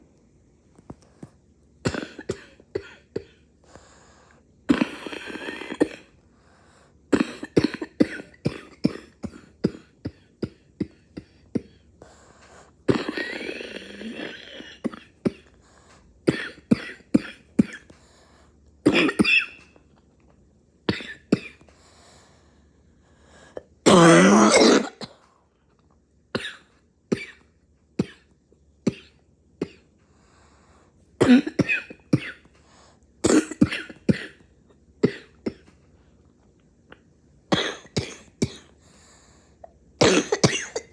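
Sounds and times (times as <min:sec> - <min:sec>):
person coughing: 0:01.8 - 0:03.4, 0:04.7 - 0:06.2, 0:07.1 - 0:11.8, 0:12.9 - 0:15.5, 0:16.3 - 0:17.9, 0:18.8 - 0:19.7, 0:20.9 - 0:21.7, 0:23.6 - 0:25.2, 0:26.4 - 0:28.3, 0:28.9 - 0:29.9, 0:31.2 - 0:32.5, 0:33.2 - 0:34.4, 0:35.0 - 0:35.7, 0:37.5 - 0:38.8, 0:40.0 - 0:40.9.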